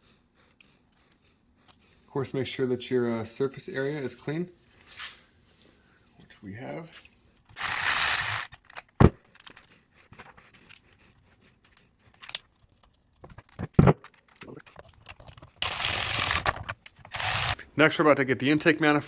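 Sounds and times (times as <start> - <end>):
metallic clicks of tools and parts: 7.6 - 8.9.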